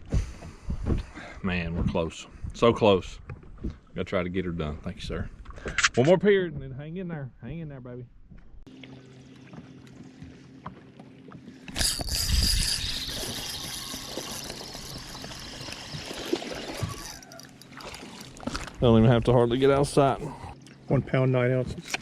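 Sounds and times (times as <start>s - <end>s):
water rushing and pouring: 12.0s - 20.2s.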